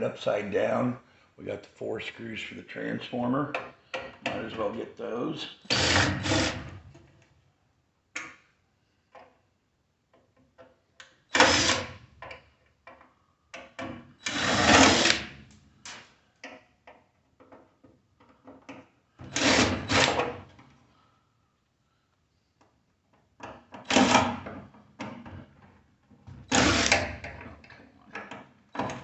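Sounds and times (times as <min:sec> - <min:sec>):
power screwdriver running: 0:05.7 - 0:06.6, 0:11.4 - 0:11.8, 0:14.3 - 0:15.2, 0:26.5 - 0:27.0
clicks and knocks of tool and screws: 0:09.1 - 0:09.5, 0:10.1 - 0:11.3, 0:12.2 - 0:14.0, 0:16.4 - 0:19.4, 0:22.6 - 0:26.4, 0:27.0 - 0:29.0.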